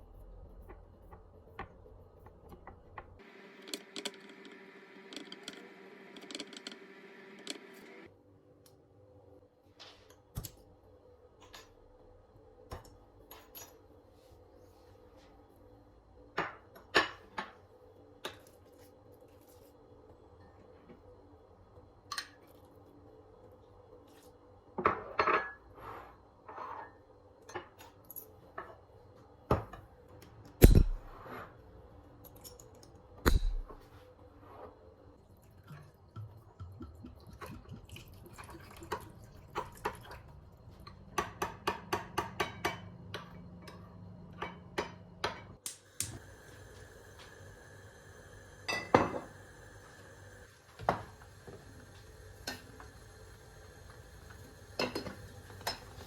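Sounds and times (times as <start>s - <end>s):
steady hum: 30.6s - 31.2s, 33.3s - 33.9s
utensils and dishes clinking: 54.8s - 56.0s.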